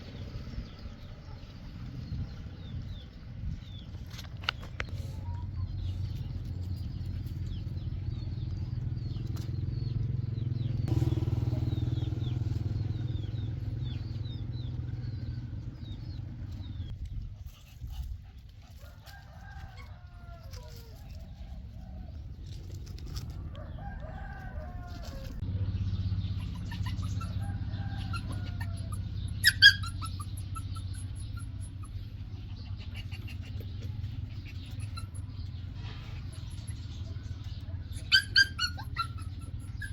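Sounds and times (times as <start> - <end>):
birds chirping: 0.0 - 17.0, 25.4 - 39.9
low rumble: 0.0 - 18.4.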